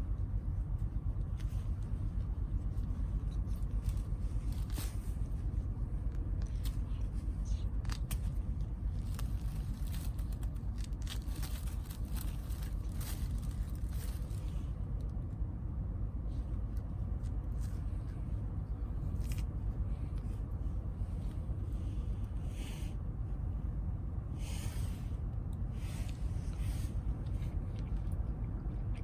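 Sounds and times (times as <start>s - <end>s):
low rumble: 0.0s - 29.0s
small clicks and scrapes: 1.2s - 5.5s, 6.1s - 15.2s.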